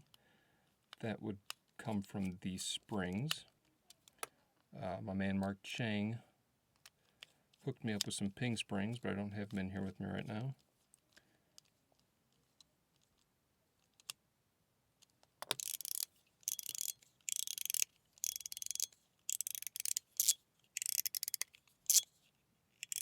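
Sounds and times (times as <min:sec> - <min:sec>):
fidget slider clicking: 0:15.4 - 0:22.1, 0:22.8 - 0:23.0
fidget slider scraping strokes: 0:15.4 - 0:22.1.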